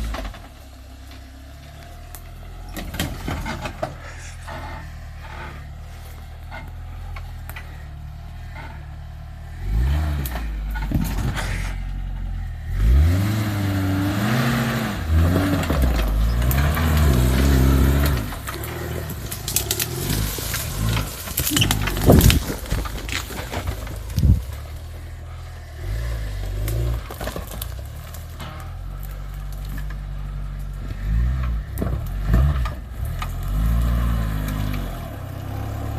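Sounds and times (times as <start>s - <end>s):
car engine idling and revving: 0.0s - 35.9s.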